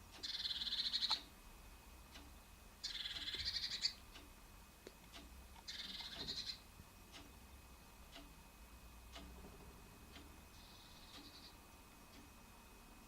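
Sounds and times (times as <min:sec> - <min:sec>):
bird churring trills: 0:00.2 - 0:01.2, 0:02.8 - 0:04.0, 0:05.7 - 0:06.7, 0:10.5 - 0:11.6.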